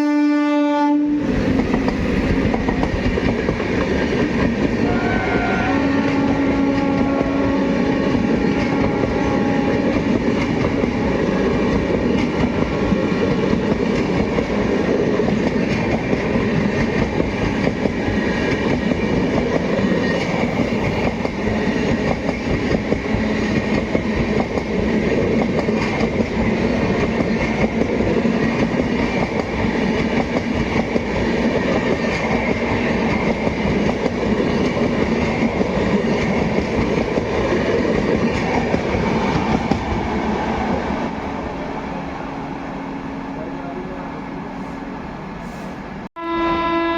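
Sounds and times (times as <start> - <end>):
train horn: 0.0 - 1.3, 4.7 - 10.3, 46.2 - 46.9
train wheels on track: 1.0 - 46.1.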